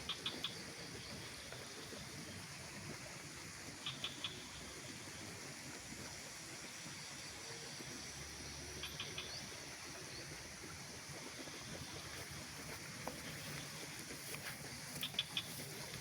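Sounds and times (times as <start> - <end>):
steady faint hiss: 0.0 - 16.0
small animal chirping: 15.0 - 15.6.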